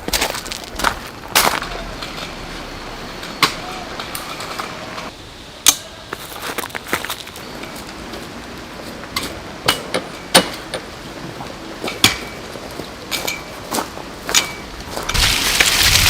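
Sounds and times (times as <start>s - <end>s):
sharp metallic knocks and clinks: 14.3s - 14.7s.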